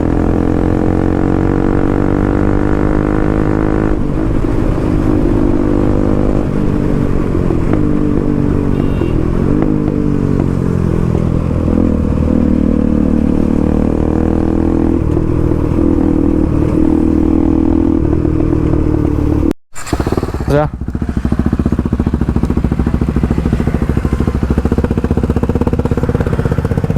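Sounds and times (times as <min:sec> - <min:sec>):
motorcycle engine revving: 0:00.0 - 0:26.9.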